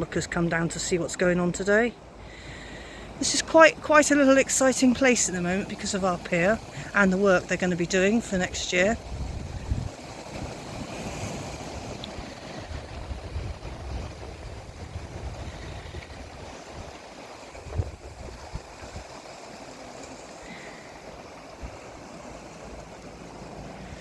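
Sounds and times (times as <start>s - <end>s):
water wash: 0.0s - 24.0s
wind rumbling on microphone: 3.1s - 19.8s.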